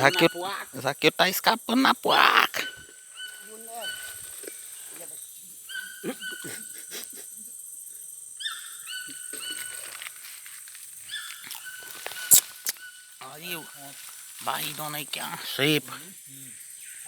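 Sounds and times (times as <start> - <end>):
high-pitched animal calls: 0.0 - 0.8, 1.7 - 5.0, 5.6 - 7.5, 8.4 - 10.2, 11.0 - 16.6
high insect drone: 0.0 - 17.0.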